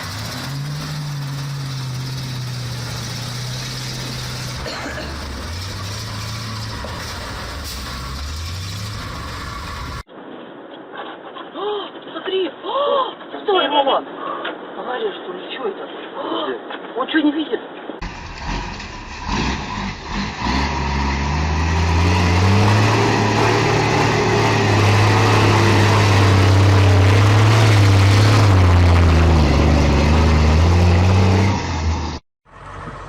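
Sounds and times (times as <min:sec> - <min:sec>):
large engine revving: 0:00.0 - 0:10.0, 0:18.0 - 0:33.0.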